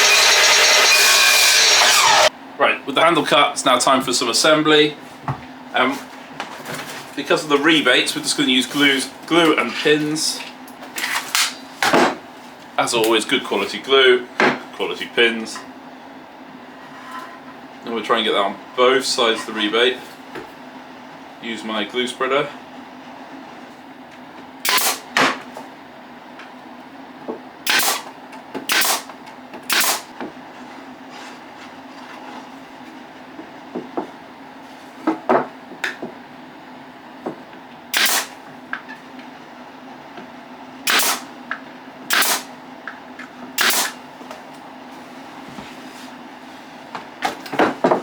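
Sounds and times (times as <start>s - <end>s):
pin nailer shots: 0.0s - 2.3s, 24.6s - 25.4s, 27.7s - 30.1s, 37.9s - 38.4s, 40.8s - 41.3s, 42.1s - 42.5s, 43.6s - 44.0s.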